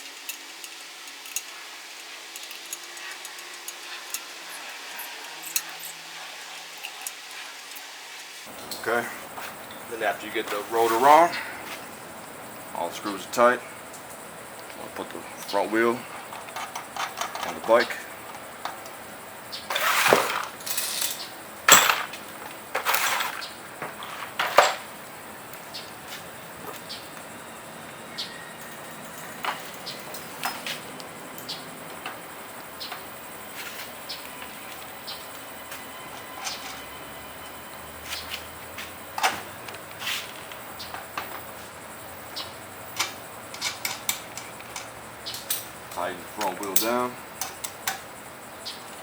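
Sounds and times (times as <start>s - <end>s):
bike wheel scraping rattle: 0.0s - 12.0s, 19.5s - 24.9s, 38.0s - 41.7s
metal clanks: 19.7s - 22.2s, 42.9s - 48.0s.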